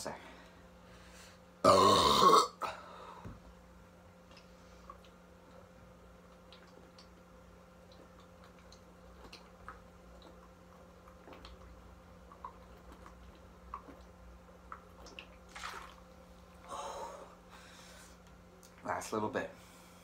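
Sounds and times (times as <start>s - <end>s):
man gulping and swallowing: 1.6s - 3.4s, 4.2s - 15.9s
small wet clicks: 4.2s - 15.6s.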